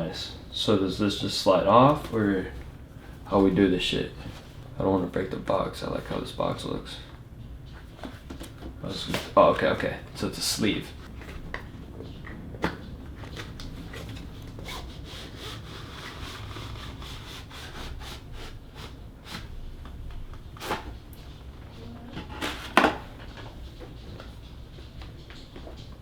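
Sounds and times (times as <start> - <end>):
cardboard rubbing on cardboard: 8.0 - 19.8.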